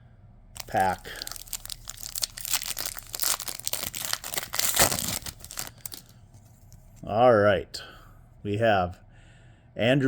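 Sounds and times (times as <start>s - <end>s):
wrapper tearing and crinkling: 0.6s - 6.2s.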